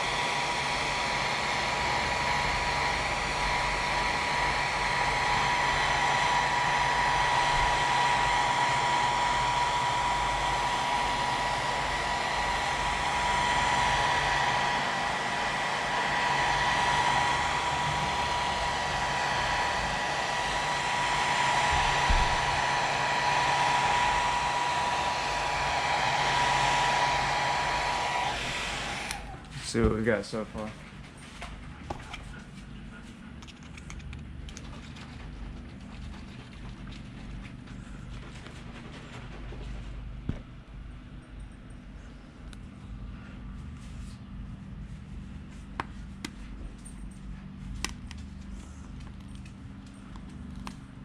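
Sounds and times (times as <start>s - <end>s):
hot-air blower whooshing: 0.0s - 31.4s
high whine of fan motor: 0.0s - 51.0s.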